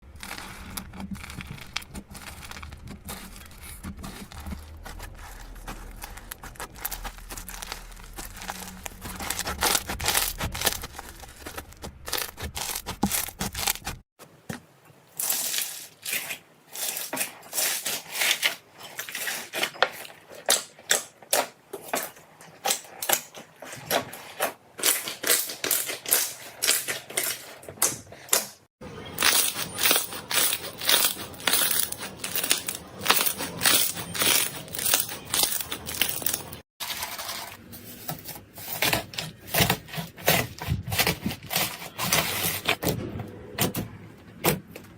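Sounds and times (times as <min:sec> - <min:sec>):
low hum: 0:00.0 - 0:14.0.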